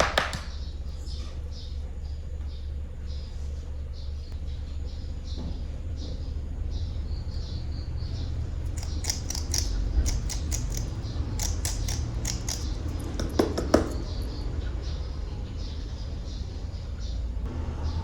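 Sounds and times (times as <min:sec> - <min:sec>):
plastic toys clicking and tapping: 0:08.7 - 0:14.2
plastic toys knocking: 0:11.5 - 0:14.2.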